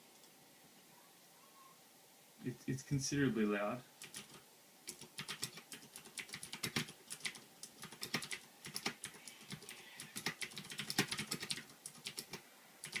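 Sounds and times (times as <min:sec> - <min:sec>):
mechanical keyboard typing: 0:04.0 - 0:13.0.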